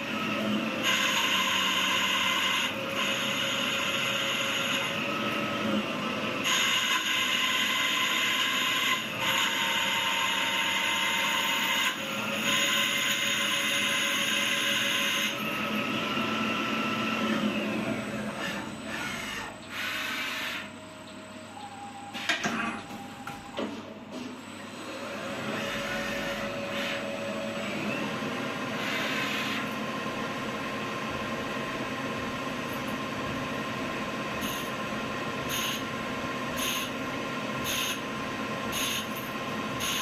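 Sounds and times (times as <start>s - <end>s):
lathe mechanical whine: 0.0s - 40.0s.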